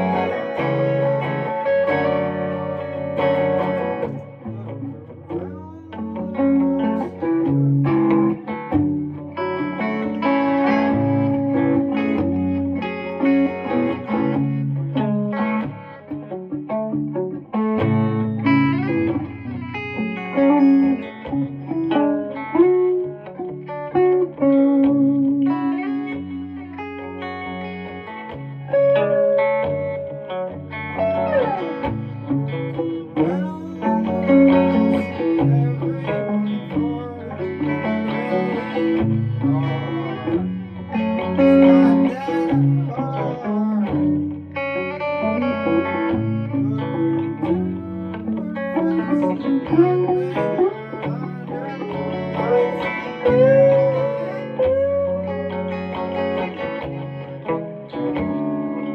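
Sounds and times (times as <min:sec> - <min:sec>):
electric guitar solo: 0:00.0 - 0:58.9.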